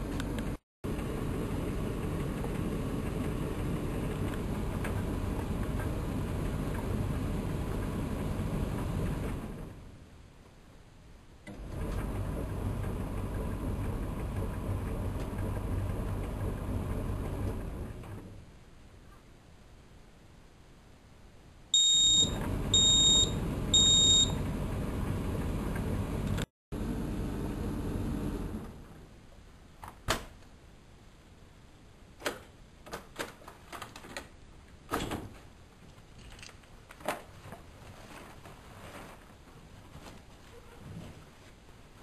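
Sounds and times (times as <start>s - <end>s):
washing machine running: 0.8s - 9.9s, 11.5s - 18.3s, 22.2s - 28.9s
washing machine beeping: 21.7s - 25.4s.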